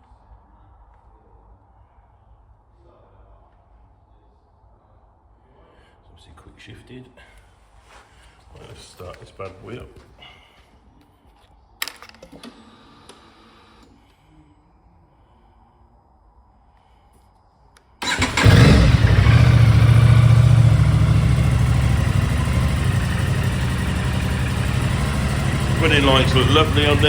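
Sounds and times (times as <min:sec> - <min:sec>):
motorcycle engine starting and idling: 0:18.0 - 0:27.0.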